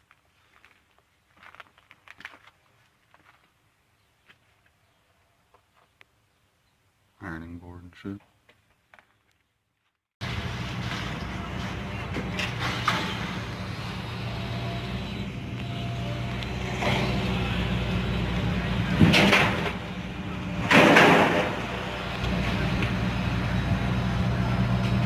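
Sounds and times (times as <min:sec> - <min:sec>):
truck engine humming: 0:10.2 - 0:25.0.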